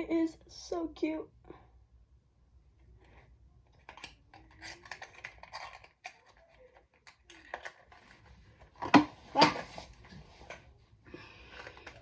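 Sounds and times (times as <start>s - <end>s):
plastic toys clicking and rustling: 3.8s - 8.0s.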